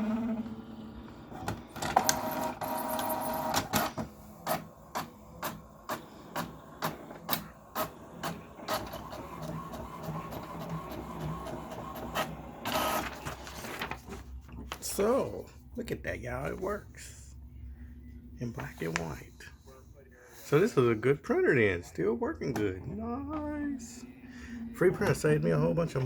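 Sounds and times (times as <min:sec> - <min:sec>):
printer motor whine: 0:00.0 - 0:13.8
printer whirring: 0:00.0 - 0:14.4
printer clicking: 0:01.4 - 0:13.5.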